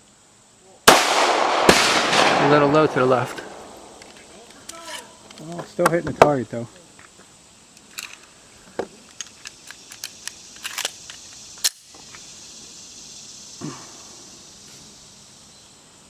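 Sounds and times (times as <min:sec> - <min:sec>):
metallic clicks and rattles of pistol: 0:07.8 - 0:08.3, 0:09.1 - 0:11.9.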